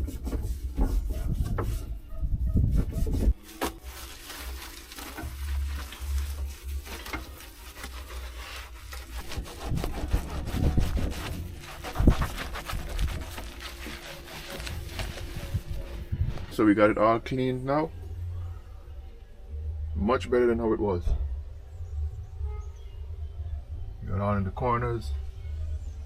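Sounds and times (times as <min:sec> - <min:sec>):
hand scraping and scrubbing dirt: 0:00.0 - 0:16.8.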